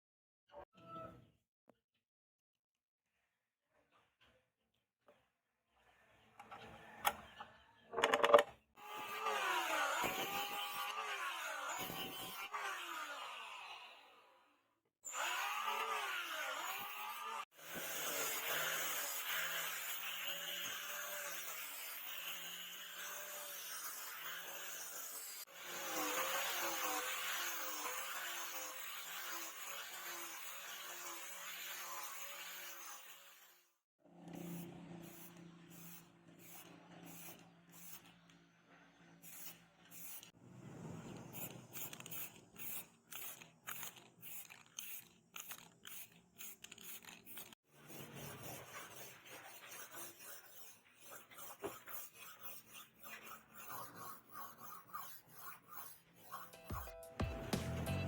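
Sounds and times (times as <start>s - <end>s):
scraping strokes on blade: 34.2s - 40.4s, 41.2s - 57.0s
workshop motor running: 57.2s - 58.0s.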